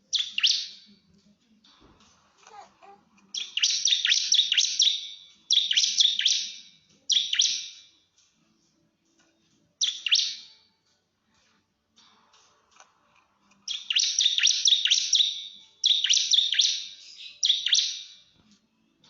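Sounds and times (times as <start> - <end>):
bird chirping in rapid bursts: 0.0 - 0.9, 3.3 - 7.9, 9.8 - 10.6, 13.7 - 18.3.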